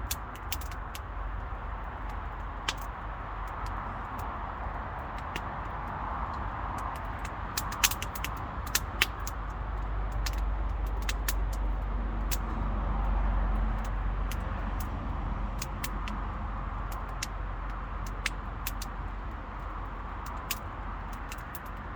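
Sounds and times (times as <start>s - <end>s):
campfire crackling and popping: 0.0s - 21.9s.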